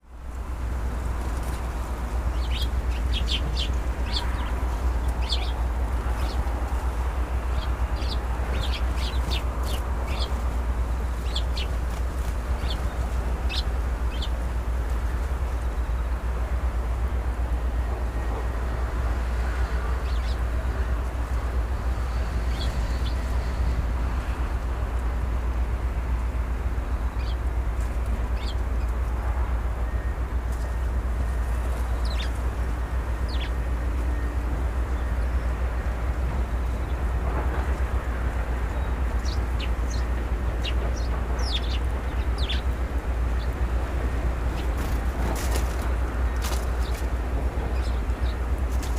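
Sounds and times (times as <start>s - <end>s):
steady low rumble: 0.0s - 48.9s
small birds chirping: 1.4s - 6.9s, 7.5s - 14.4s, 20.0s - 20.4s, 22.1s - 23.5s, 27.1s - 27.4s, 28.3s - 28.9s, 31.7s - 32.4s, 33.2s - 33.6s, 38.7s - 43.6s, 44.5s - 48.4s.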